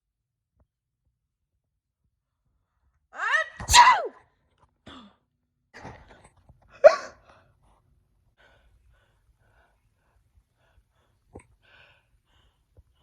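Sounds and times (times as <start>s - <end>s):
woman breathing: 7.2s - 13.0s.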